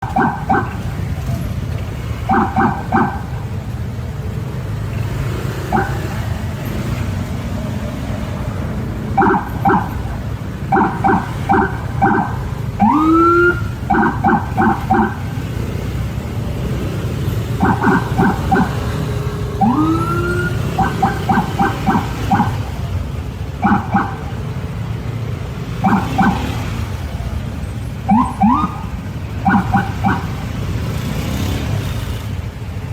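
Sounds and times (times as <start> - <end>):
low traffic rumble: 0.0 - 32.9
car horn honking: 2.2 - 3.4, 9.1 - 15.3, 23.6 - 24.4, 28.1 - 30.4.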